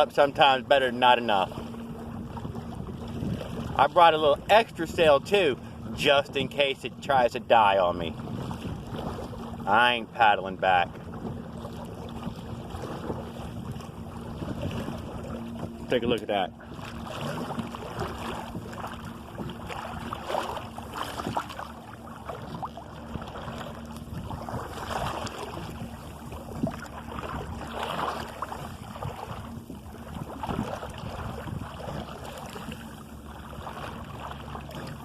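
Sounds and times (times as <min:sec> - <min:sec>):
water rushing along a hull: 0:00.0 - 0:35.0
wind noise: 0:08.1 - 0:09.3, 0:12.8 - 0:15.8, 0:24.1 - 0:32.9.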